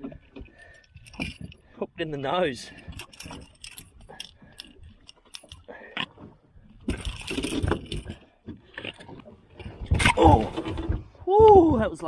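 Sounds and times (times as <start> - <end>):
fishing tackle clicking and knocking: 0.0 - 1.8, 2.7 - 9.2
water splashing beside boat: 0.0 - 12.0.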